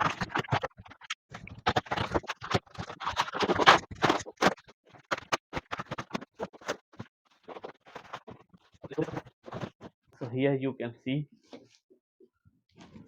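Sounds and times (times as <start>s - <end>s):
cardboard scraping and rustling: 0.0s - 9.9s.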